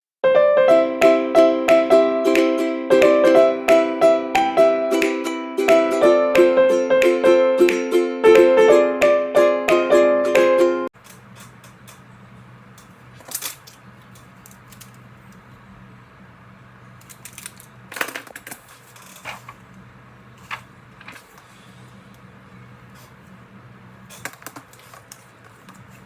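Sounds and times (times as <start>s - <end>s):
faint steady hum: 11.0s - 26.0s
paper rustling: 17.1s - 19.6s, 20.4s - 21.7s, 24.1s - 26.0s.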